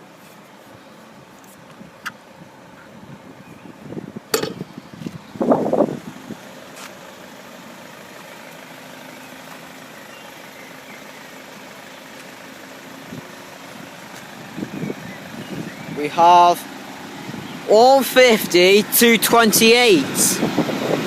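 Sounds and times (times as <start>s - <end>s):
wind buffeting microphone: 1.8s - 6.4s, 14.4s - 16.1s, 17.2s - 17.7s, 20.0s - 21.0s
engine idling: 2.2s - 21.0s.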